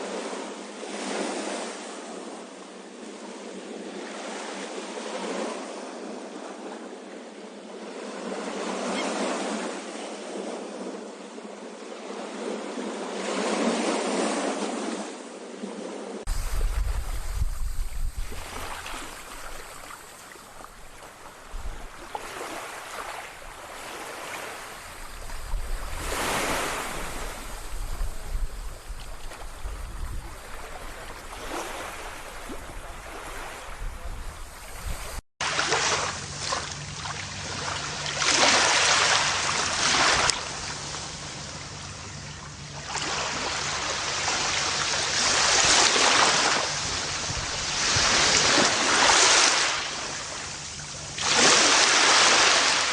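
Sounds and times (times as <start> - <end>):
large waves breaking: 0.0 - 6.9, 7.8 - 41.9, 42.8 - 52.9
ocean surf washing onto shore: 16.2 - 41.8, 42.9 - 52.9.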